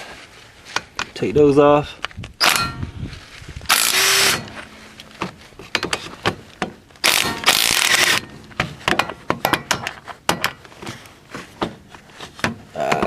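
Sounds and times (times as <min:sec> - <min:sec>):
air impact wrench burst: 0:03.7 - 0:04.5, 0:07.0 - 0:08.2
metallic clicks and knocks: 0:04.3 - 0:10.7.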